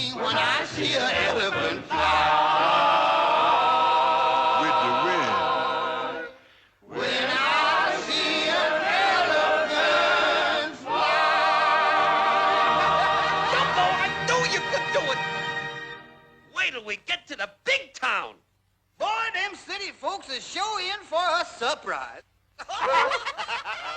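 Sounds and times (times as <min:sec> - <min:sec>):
orchestral score with choir: 0:00.0 - 0:16.5.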